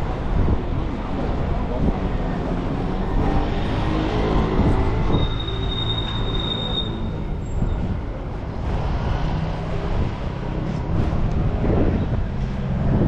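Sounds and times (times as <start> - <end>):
low rumble of rail vehicle: 4.2 - 13.0
steel wheels squealing on rails: 4.7 - 8.1.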